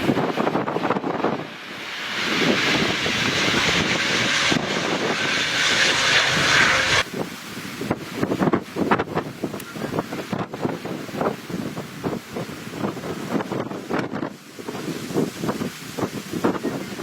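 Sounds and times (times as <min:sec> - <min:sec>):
aircraft engines whining: 0:00.0 - 0:11.6
wind buffeting microphone: 0:00.0 - 0:17.0.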